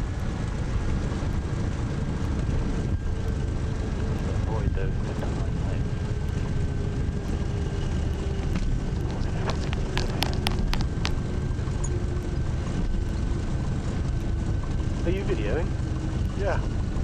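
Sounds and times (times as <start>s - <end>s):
light aircraft engine and propeller: 0.0s - 17.0s
sharp clicks: 8.5s - 11.3s.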